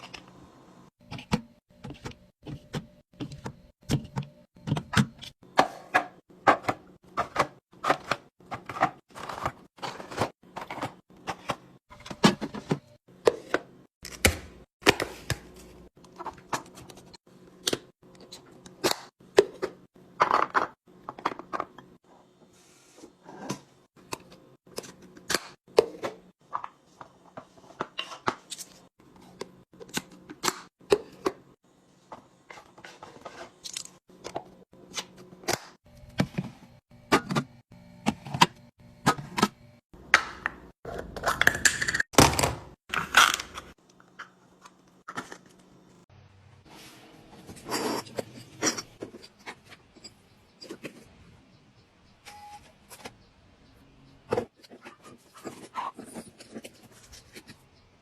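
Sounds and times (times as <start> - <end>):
packaging rustling and scraping: 8.0 - 11.5, 54.6 - 57.6.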